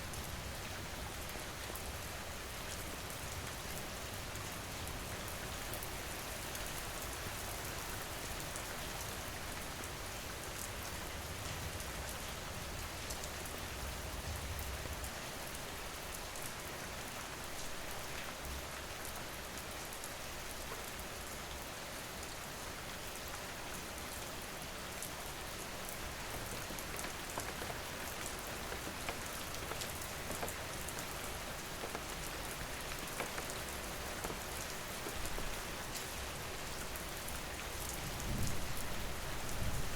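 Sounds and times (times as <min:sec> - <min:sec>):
rain drops tapping: 0:26.0 - 0:38.8
low rumble of wind: 0:37.6 - 0:39.9.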